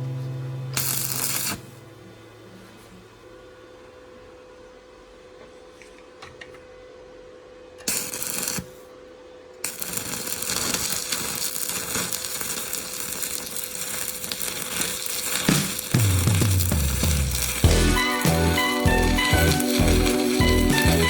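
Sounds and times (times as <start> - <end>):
arc welder crackling: 0.0 - 2.5, 7.8 - 8.9, 9.6 - 21.0.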